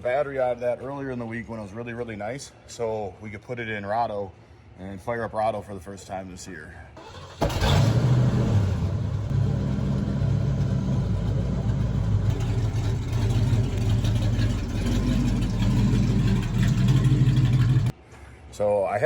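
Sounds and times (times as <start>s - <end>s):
vehicle engine running: 7.4s - 17.9s.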